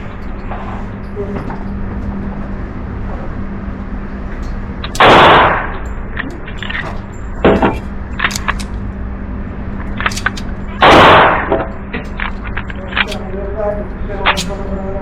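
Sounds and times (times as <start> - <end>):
pistol shots with echo: 5.0 - 5.8, 10.8 - 11.7
small clicks: 5.7 - 8.8, 9.8 - 10.6.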